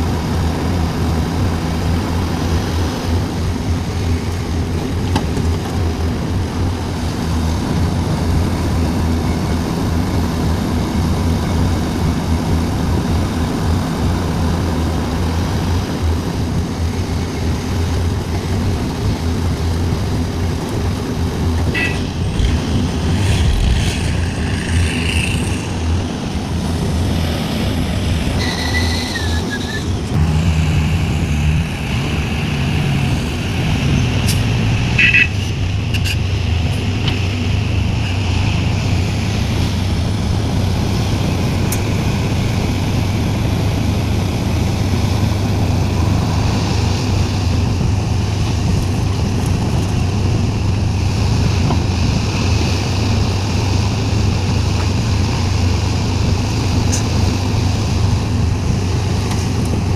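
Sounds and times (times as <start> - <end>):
excavator diesel engine running: 0.0 - 59.9
high-pitched squeals and whines: 28.4 - 34.4.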